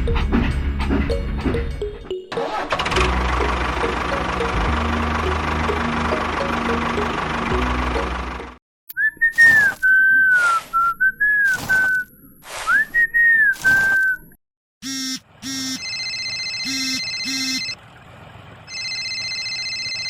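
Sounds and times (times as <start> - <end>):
person whistling a tune: 8.9 - 14.2
telephone ringing: 14.8 - 17.8, 18.7 - 20.0
telephone beeps: 14.9 - 17.8.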